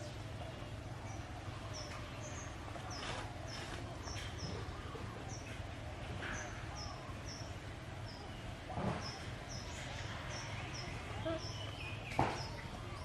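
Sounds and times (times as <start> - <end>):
low background noise: 0.0 - 13.0
small bird chirping: 6.3 - 13.0.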